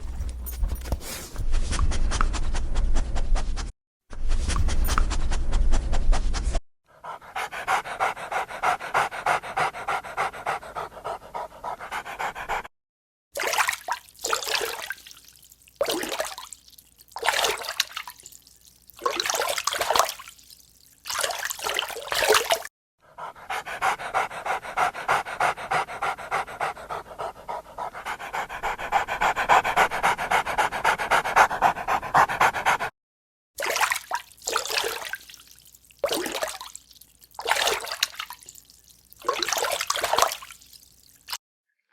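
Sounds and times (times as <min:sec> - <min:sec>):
dog panting: 0:06.9 - 0:12.7, 0:23.0 - 0:32.9.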